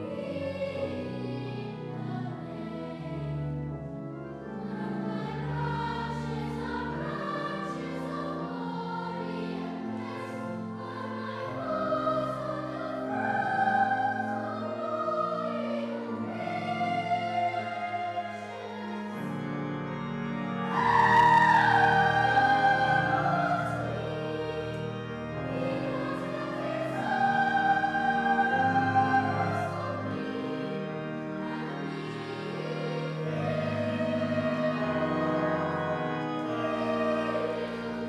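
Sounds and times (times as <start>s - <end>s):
choir singing: 0.0s - 38.0s.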